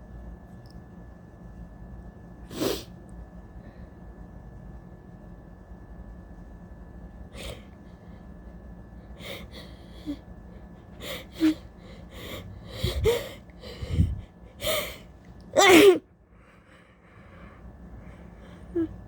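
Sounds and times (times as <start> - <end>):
person sniffing and gasping: 10.9 - 16.0.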